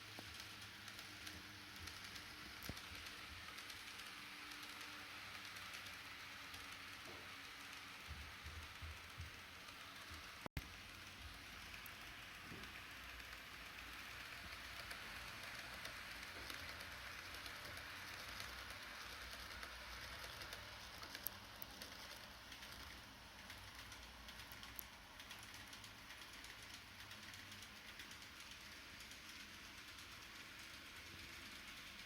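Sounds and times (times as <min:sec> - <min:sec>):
model train whirring: 0:00.0 - 0:32.0
wheels clicking over rail joints: 0:00.0 - 0:32.0.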